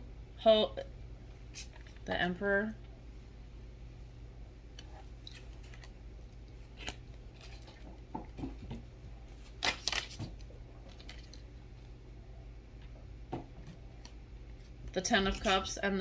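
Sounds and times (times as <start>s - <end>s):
steady low hum: 0.0s - 16.0s
cards rustling and snapping: 4.8s - 11.5s.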